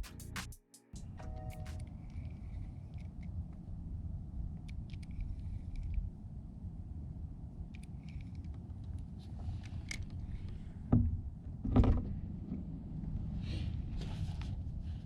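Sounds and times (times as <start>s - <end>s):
steady low rumble: 0.0s - 11.6s
faint small clicks: 4.6s - 6.0s, 7.7s - 10.2s.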